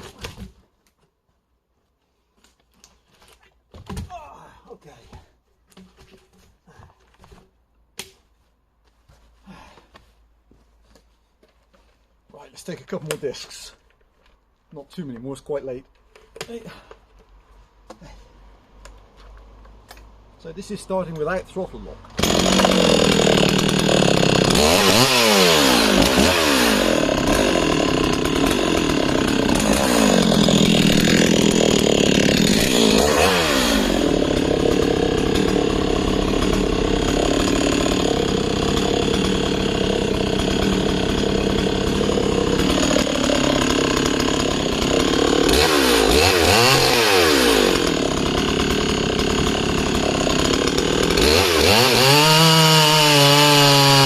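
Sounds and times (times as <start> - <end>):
chainsaw cutting log: 22.1 - 54.0.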